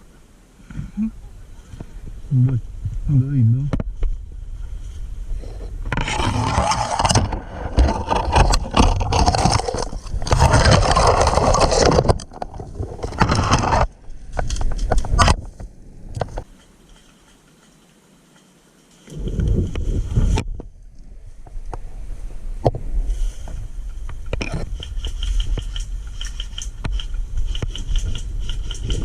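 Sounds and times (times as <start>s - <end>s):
loud scraping and rustling: 4.7s - 18.0s, 23.0s - 29.0s.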